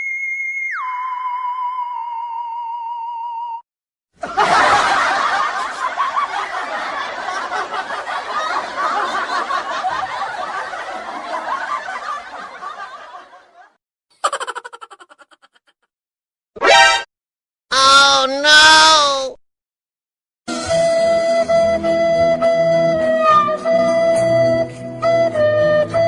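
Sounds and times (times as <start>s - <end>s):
audience laughter: 4.2s - 15.6s.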